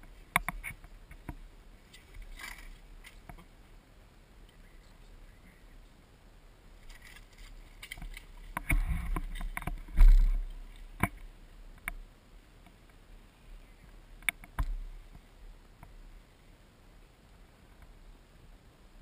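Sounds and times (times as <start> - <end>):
rustling through brush: 0.0 - 3.8, 6.6 - 12.0.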